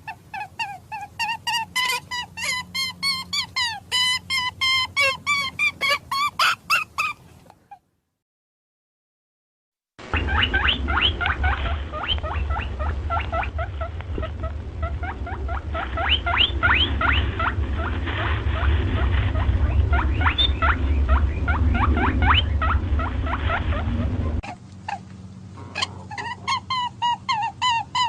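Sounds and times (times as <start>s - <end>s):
high-pitched animal squeaks: 0.0s - 7.8s, 10.1s - 28.0s
steady low rumble: 10.0s - 28.0s.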